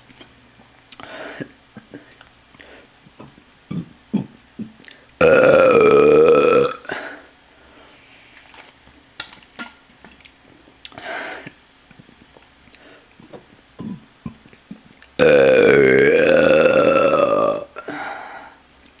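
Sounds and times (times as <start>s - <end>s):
person burping: 3.2s - 7.2s, 13.8s - 14.4s, 15.2s - 18.1s.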